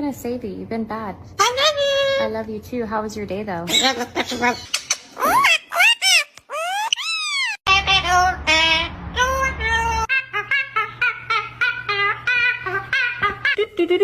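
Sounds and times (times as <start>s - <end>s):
parrot babbling: 3.7s - 13.6s.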